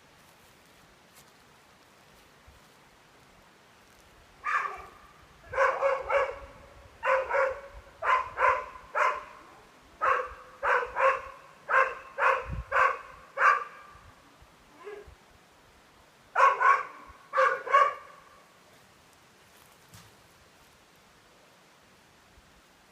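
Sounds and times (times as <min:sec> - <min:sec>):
dog barking: 0:04.4 - 0:13.9, 0:14.8 - 0:15.1, 0:16.4 - 0:18.3.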